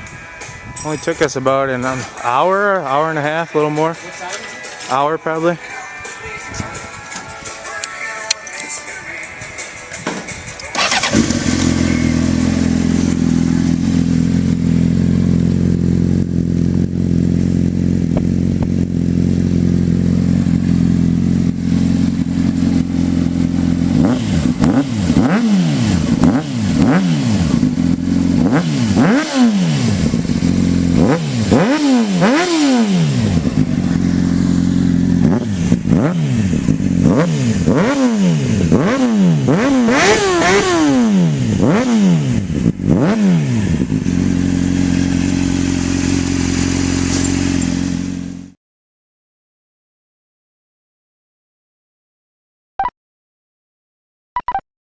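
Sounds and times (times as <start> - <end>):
motorcycle engine idling and revving: 9.6 - 48.6.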